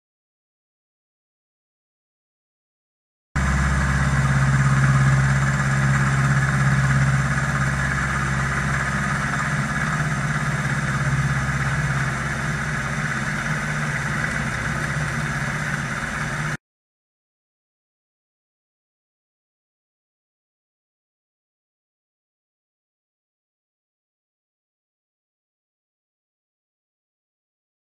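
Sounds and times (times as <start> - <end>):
machine tool motor hum: 3.4 - 16.6.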